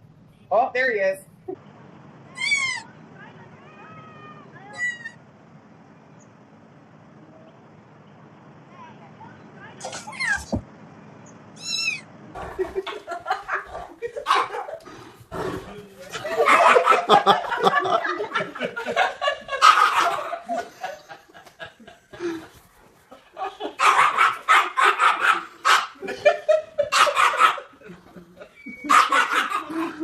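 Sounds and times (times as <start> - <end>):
pet animal vocalizing: 11.6 - 12.7
people laughing: 12.4 - 24.1, 25.4 - 30.0.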